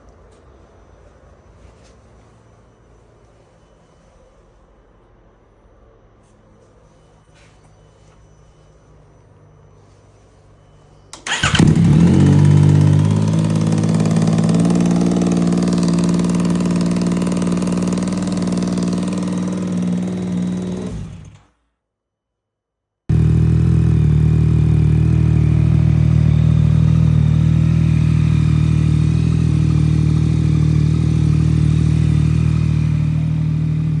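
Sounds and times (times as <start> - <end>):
motorcycle engine cranking: 11.2 - 21.5, 23.1 - 34.0
motorcycle engine idling: 11.2 - 21.5, 23.1 - 34.0.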